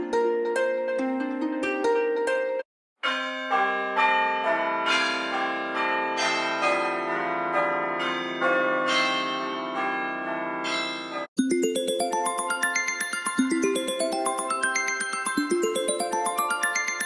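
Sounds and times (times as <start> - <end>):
bell-like alarm chime melody: 10.7 - 17.0.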